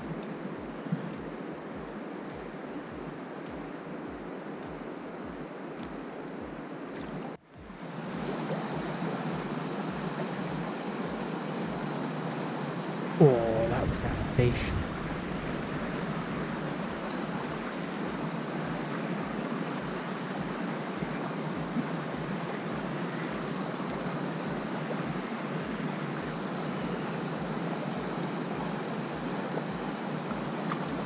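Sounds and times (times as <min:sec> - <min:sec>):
river water flowing over stones: 0:00.0 - 0:31.0.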